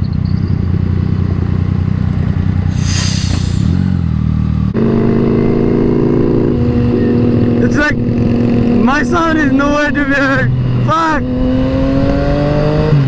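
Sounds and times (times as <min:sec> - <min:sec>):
motorcycle engine running: 0:00.0 - 0:10.9
brief hiss: 0:02.7 - 0:04.0.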